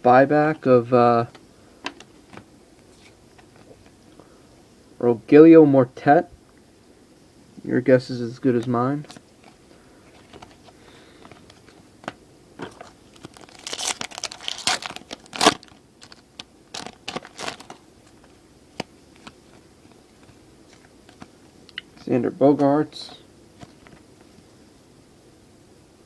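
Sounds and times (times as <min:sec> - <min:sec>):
foil wrapper crinkling and tearing: 0:12.6 - 0:18.3.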